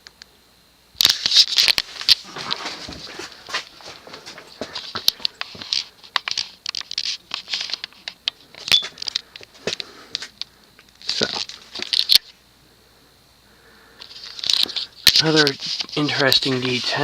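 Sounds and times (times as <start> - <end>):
handling noise rustling and clicks: 1.0 - 12.3.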